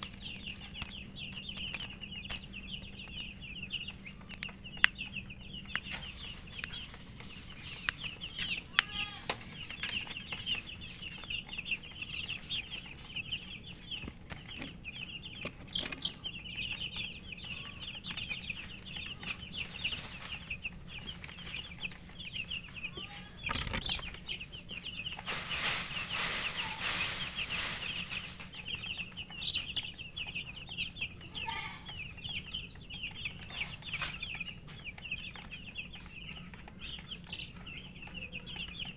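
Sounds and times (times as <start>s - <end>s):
chicks peeping: 0.0s - 38.9s
rustling noise: 23.5s - 29.8s.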